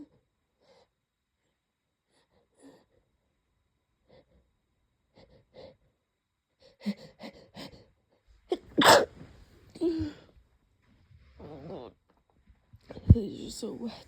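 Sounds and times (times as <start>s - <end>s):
person sneezing loudly: 8.5s - 9.1s.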